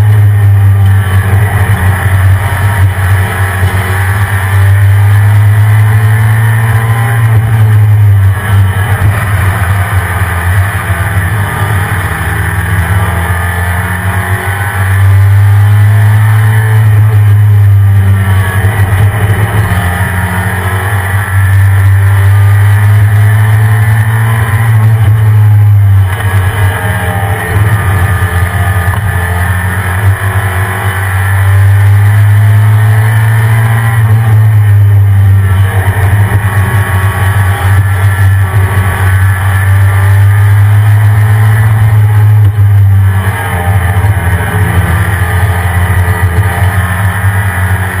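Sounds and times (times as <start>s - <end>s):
truck engine droning: 0.0s - 48.0s.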